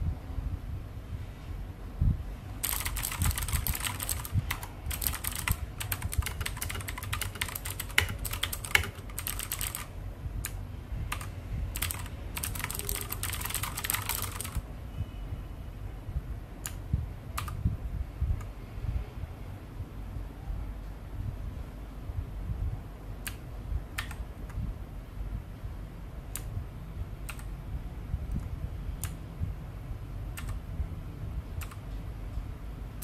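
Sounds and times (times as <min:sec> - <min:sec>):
mechanical keyboard clicks: 0:02.6 - 0:14.6, 0:17.4 - 0:17.6, 0:24.0 - 0:24.2, 0:27.3 - 0:27.5, 0:30.4 - 0:30.6, 0:31.6 - 0:31.8.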